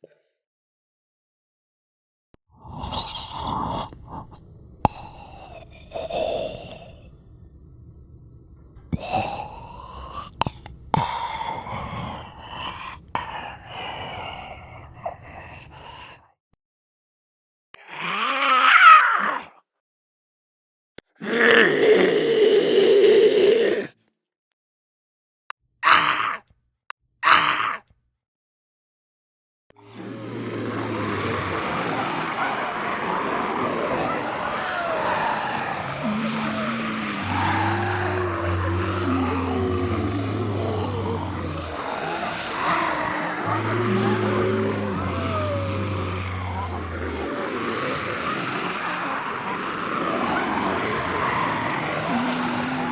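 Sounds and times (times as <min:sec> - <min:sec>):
raspy breathy zombie voice: 0:02.6 - 0:07.5, 0:08.9 - 0:16.3, 0:21.2 - 0:24.0, 0:25.8 - 0:26.4, 0:27.2 - 0:27.8, 0:29.8 - 0:52.9.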